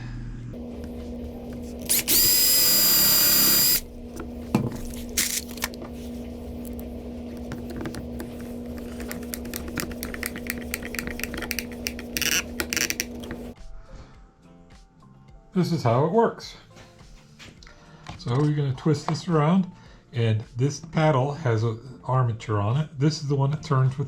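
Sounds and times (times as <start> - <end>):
steady low hum: 0.0 - 13.6
power drill whining: 0.6 - 13.6.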